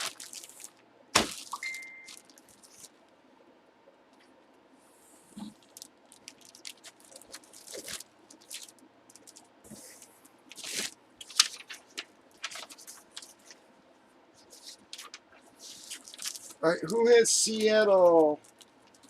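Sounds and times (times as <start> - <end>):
plastic packaging crinkling: 0.0 - 3.0, 5.4 - 9.5, 10.5 - 13.6, 14.4 - 19.0.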